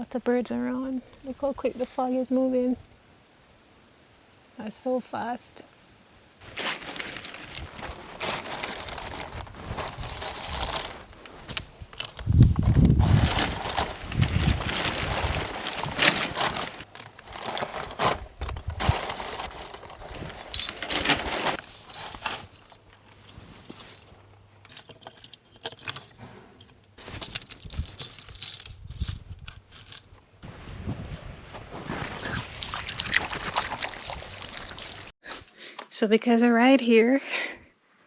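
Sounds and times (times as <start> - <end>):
camping gear clicks and scrapes: 6.4 - 30.5, 31.4 - 35.2.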